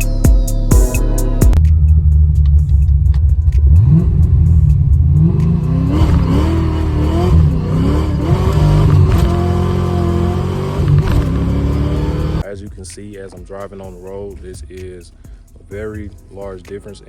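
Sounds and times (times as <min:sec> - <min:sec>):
car engine accelerating: 0:01.2 - 0:12.5.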